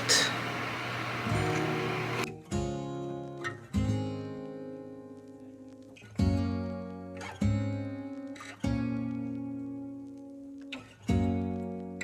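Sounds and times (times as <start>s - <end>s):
strummed acoustic guitar: 0.0s - 5.2s.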